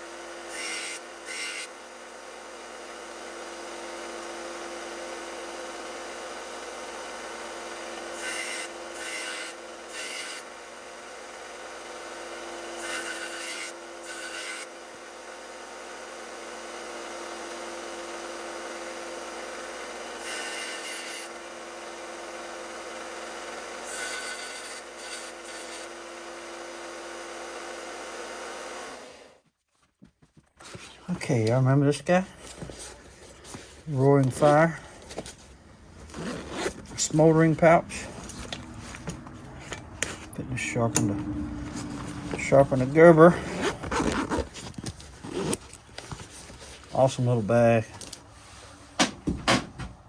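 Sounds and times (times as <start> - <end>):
electric sander humming: 0.0 - 29.3, 32.6 - 46.6
grinding steel blade: 7.8 - 10.6, 12.4 - 14.8, 20.0 - 21.6, 23.8 - 26.2.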